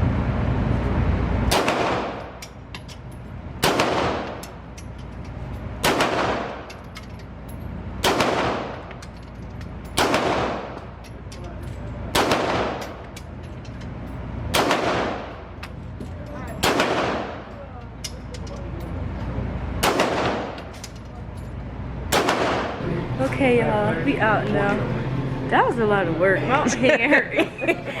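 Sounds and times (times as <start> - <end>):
fainter sharp gunshots: 1.5 - 2.4, 3.6 - 4.4, 5.8 - 6.6, 8.0 - 8.8, 10.0 - 10.8, 12.2 - 12.8, 14.5 - 15.4, 16.6 - 17.4, 19.8 - 20.6, 22.1 - 22.8
loud echoing pistol shots: 1.5 - 2.4, 3.6 - 4.4, 5.8 - 6.7, 8.0 - 8.9, 10.0 - 10.8, 12.1 - 13.0, 14.5 - 15.5, 16.6 - 17.5, 19.8 - 20.6, 22.1 - 22.8.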